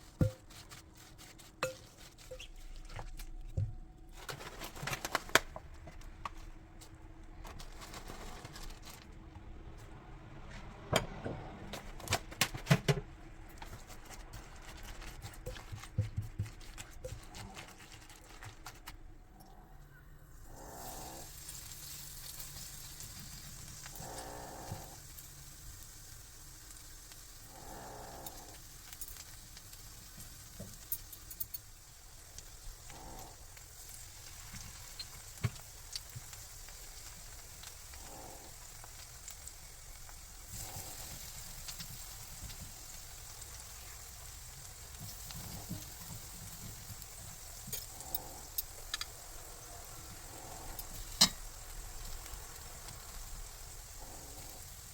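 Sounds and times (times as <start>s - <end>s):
stirring sounds: 0.0s - 8.9s, 13.4s - 25.7s
food sizzling in a pan: 20.2s - 54.9s.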